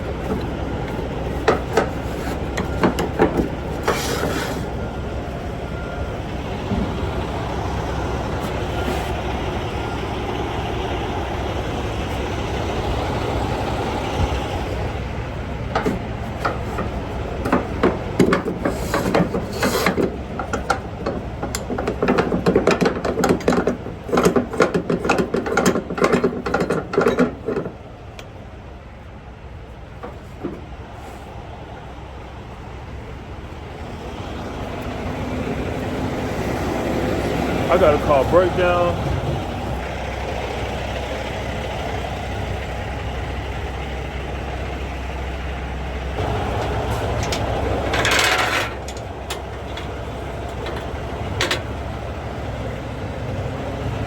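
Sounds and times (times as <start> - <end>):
steady background noise: 0.0 - 54.0.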